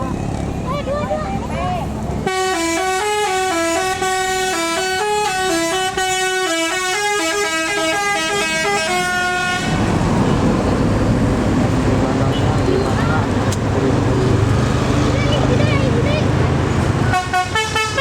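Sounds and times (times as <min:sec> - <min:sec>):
bus engine and road noise: 0:00.0 - 0:18.0
multi-tone air horn melody: 0:02.2 - 0:09.8, 0:17.1 - 0:18.0.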